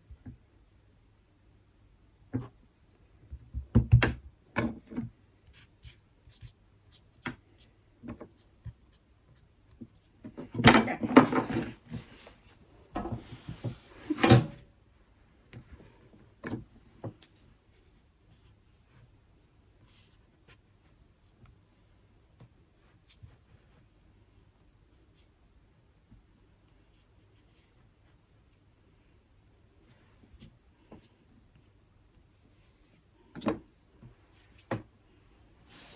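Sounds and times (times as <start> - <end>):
dough rubbing and scraping: 35.6 - 35.9.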